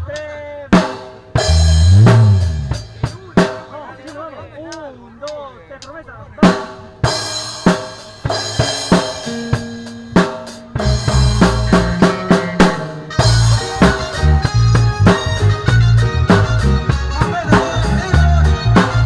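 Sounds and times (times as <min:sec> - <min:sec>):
drum hits: 0:00.8 - 0:04.2, 0:06.4 - 0:19.0
bass line: 0:01.4 - 0:03.0, 0:10.8 - 0:19.0
held notes: 0:09.4 - 0:19.0.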